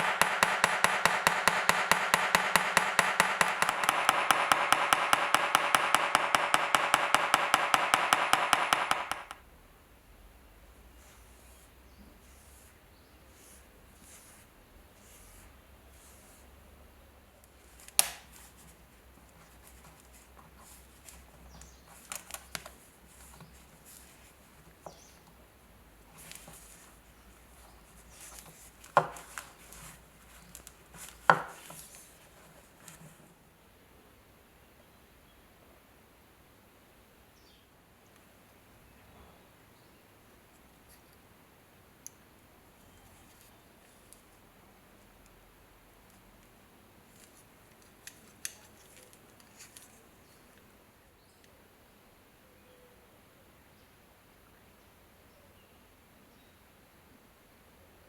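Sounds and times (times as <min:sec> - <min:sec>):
sharp knocks on hard surface: 0:00.0 - 0:09.4, 0:31.3 - 0:31.7
small hammer tapping rapidly: 0:00.0 - 0:09.4, 0:29.0 - 0:29.4, 0:31.1 - 0:31.8
tool clicking and rubbing: 0:00.0 - 0:09.4.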